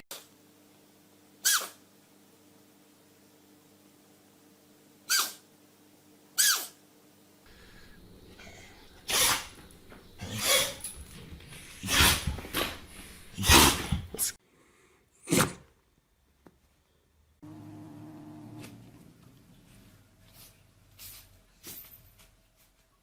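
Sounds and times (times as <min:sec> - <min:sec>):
steady low hum: 0:07.1 - 0:14.4
pet sneezing: 0:08.4 - 0:14.4, 0:15.2 - 0:15.6.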